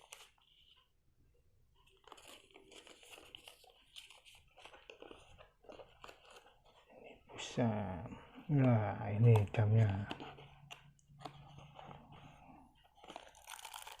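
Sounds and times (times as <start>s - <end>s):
packaging rustling and crinkling: 1.8s - 7.2s, 8.5s - 14.0s.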